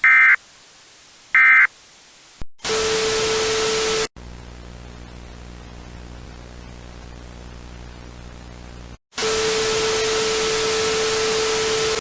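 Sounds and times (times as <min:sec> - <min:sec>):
loud hissing static: 0:00.0 - 0:02.4
faint static: 0:00.0 - 0:02.5.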